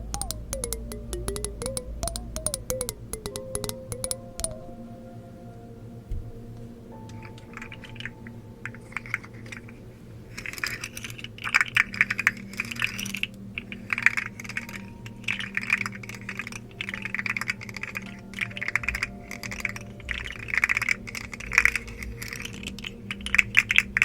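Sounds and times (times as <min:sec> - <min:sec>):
rapid light clicks and taps: 0:00.0 - 0:04.6, 0:10.4 - 0:24.0.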